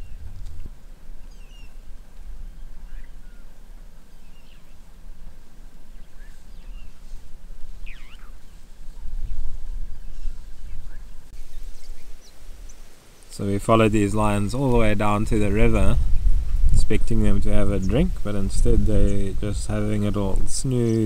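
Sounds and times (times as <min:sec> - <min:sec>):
bird chirps and trills: 0:00.0 - 0:00.3, 0:01.2 - 0:05.0, 0:05.7 - 0:13.3
steady low rumble: 0:13.4 - 0:21.0.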